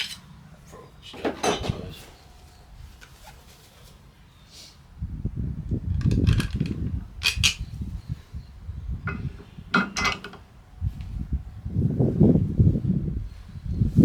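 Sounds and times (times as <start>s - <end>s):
metal bolts and tools clinking: 0.0s - 0.3s, 1.1s - 1.9s, 6.0s - 7.7s, 9.1s - 10.4s
low rumbling handling noise: 5.2s - 14.0s.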